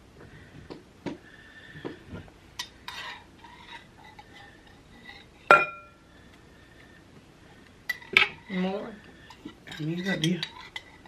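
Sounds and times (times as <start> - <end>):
utensils clinking against a bowl: 7.9 - 11.0.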